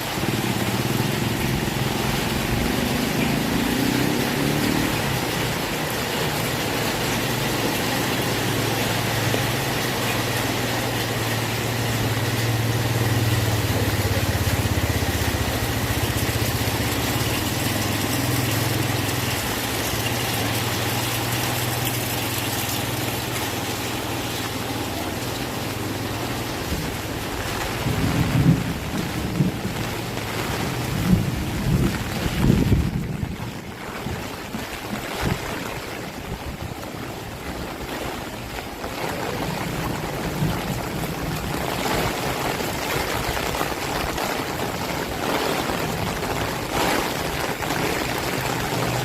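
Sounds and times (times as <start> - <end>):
heavy rain falling: 0.0 - 49.0.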